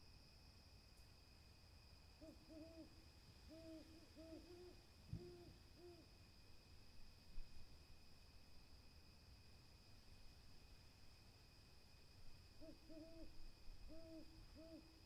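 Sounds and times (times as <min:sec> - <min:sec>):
owl hooting: 0:02.2 - 0:06.0, 0:12.6 - 0:15.0.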